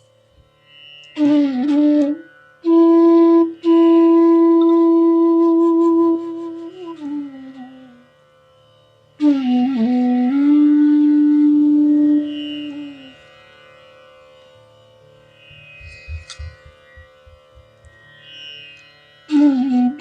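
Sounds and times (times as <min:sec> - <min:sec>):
bamboo flute playing: 0:01.1 - 0:08.2, 0:09.2 - 0:13.3, 0:19.3 - 0:20.0.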